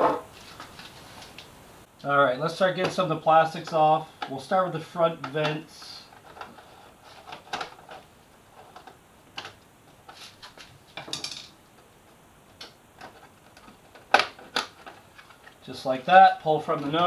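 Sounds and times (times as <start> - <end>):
plastic parts clicking and tapping: 12.5 - 15.6.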